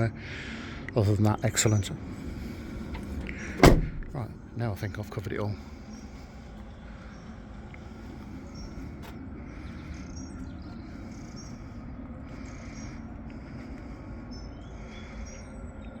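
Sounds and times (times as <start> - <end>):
low rumble: 1.2 - 4.6.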